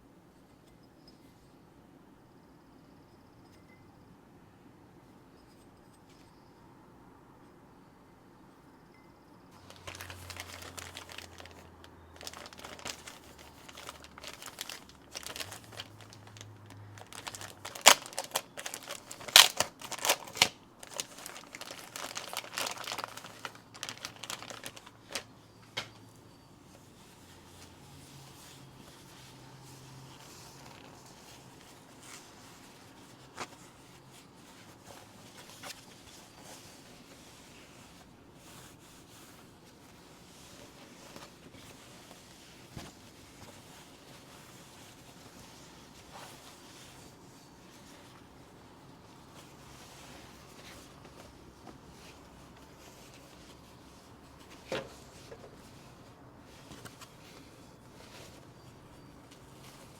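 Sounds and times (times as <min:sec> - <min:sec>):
faint low hum: 0:00.0 - 0:59.9
packaging rustling: 0:09.6 - 0:25.9, 0:28.4 - 0:59.9
light rubbing of items: 0:09.6 - 0:59.9.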